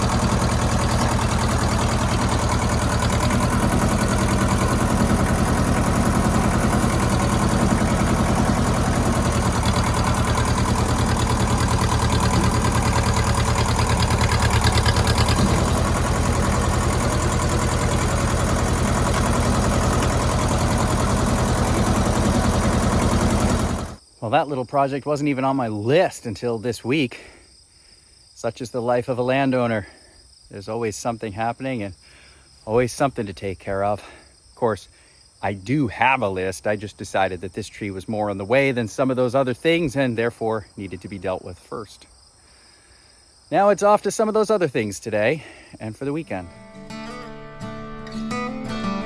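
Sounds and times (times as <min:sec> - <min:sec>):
tractor diesel engine running: 0:00.0 - 0:24.0, 0:45.3 - 0:49.0.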